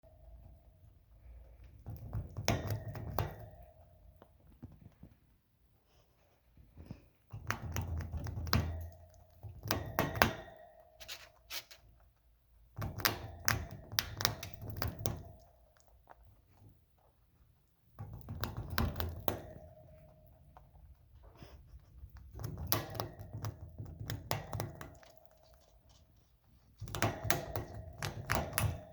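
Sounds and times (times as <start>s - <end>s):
animal chewing crunchy treat: 13.8s - 28.8s.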